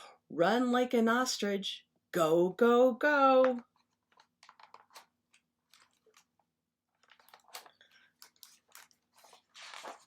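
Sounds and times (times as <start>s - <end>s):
paper pages rustling and turning: 3.6s - 10.0s.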